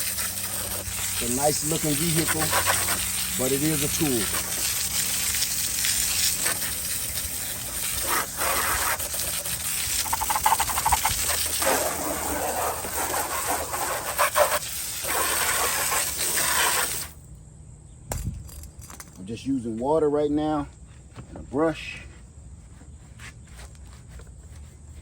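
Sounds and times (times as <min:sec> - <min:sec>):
brush scrubbing: 0:00.0 - 0:17.1, 0:22.6 - 0:25.0
water spray hissing and splashing: 0:00.0 - 0:17.2.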